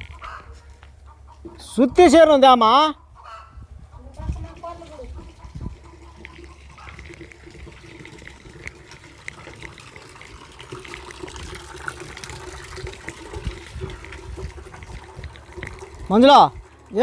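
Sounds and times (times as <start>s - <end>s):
water running: 4.3s - 17.0s.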